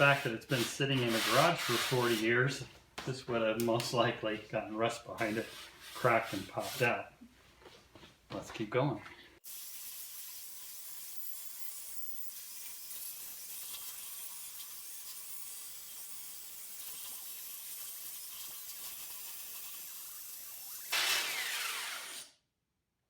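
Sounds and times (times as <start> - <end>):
power tool sanding filler: 16.6 - 22.3.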